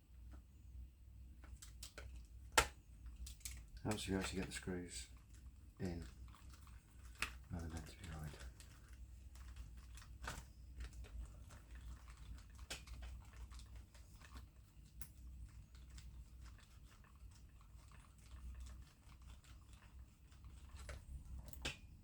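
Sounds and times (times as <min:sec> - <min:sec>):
clicks and taps on plastic: 0:01.4 - 0:04.5.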